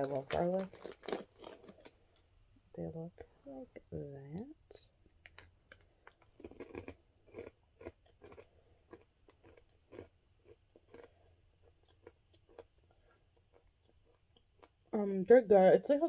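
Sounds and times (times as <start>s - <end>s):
person chewing crunchy chips: 0.0s - 2.3s, 5.3s - 15.0s.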